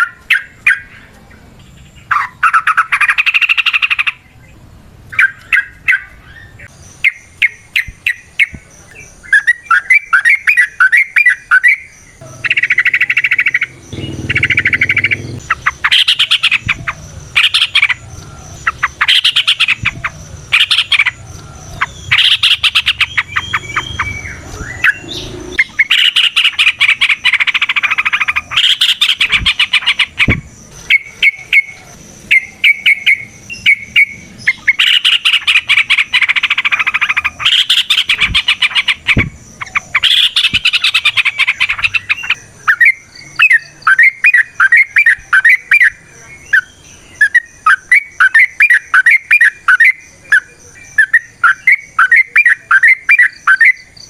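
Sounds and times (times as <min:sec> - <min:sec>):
bulbul chattering song: 0:00.0 - 0:54.0
short evenly spaced chirps: 0:06.6 - 0:46.0.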